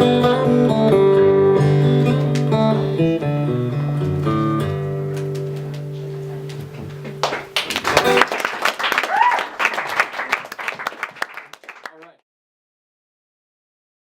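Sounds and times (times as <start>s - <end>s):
acoustic guitar chord ringing: 0.0s - 7.2s
audience applauding: 7.0s - 12.2s.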